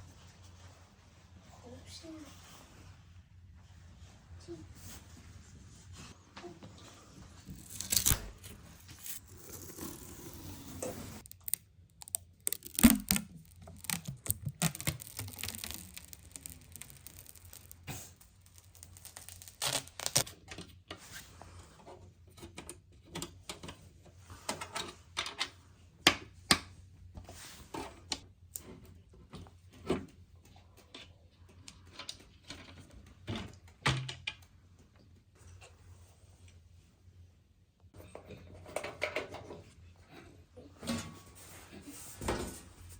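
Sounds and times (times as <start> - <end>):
packaging rustling: 7.6 - 10.5, 11.2 - 20.3.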